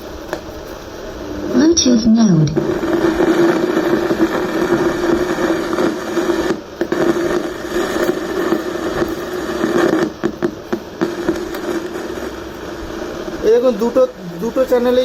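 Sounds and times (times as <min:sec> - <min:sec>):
speaker rushing noise: 0:00.0 - 0:15.0
hum-like tone: 0:00.9 - 0:06.5.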